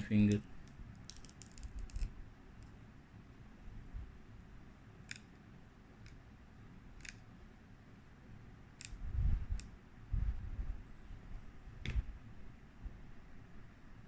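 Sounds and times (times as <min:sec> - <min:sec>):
fingernail clicking on glass: 0:00.3 - 0:02.1.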